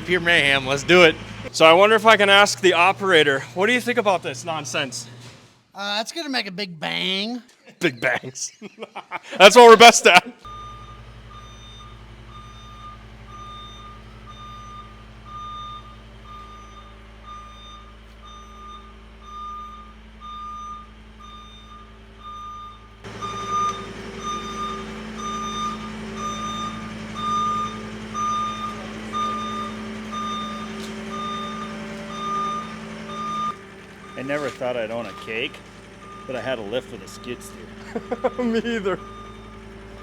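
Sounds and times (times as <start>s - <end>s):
diesel engine running: 0.0s - 5.3s, 9.4s - 40.0s
backup alarm beeping: 10.5s - 40.0s.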